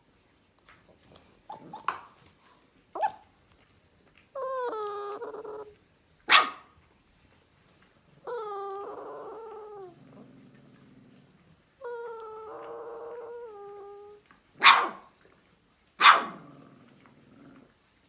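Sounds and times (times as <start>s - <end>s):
puppy yipping: 3.0s - 3.3s, 6.3s - 6.7s, 14.6s - 15.0s, 16.0s - 16.4s
puppy whining: 4.3s - 6.6s, 8.0s - 11.0s, 11.8s - 14.9s.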